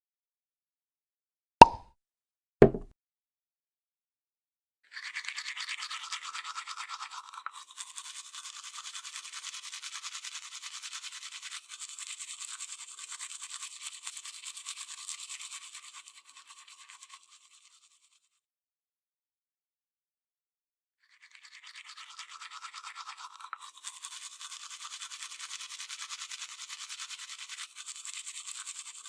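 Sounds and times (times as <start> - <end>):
toothbrush scrubbing teeth: 4.9 - 18.3, 21.0 - 29.0.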